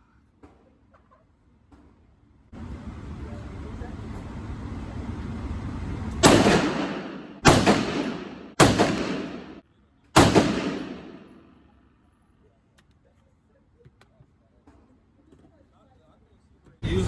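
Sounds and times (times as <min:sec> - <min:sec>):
rifle shots echoing: 0:06.2 - 0:09.6, 0:10.2 - 0:11.5.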